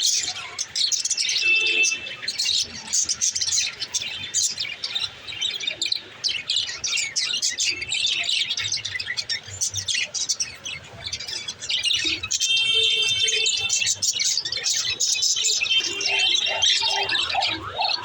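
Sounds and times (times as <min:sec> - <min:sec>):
parrot chirping: 0:11.7 - 0:18.0.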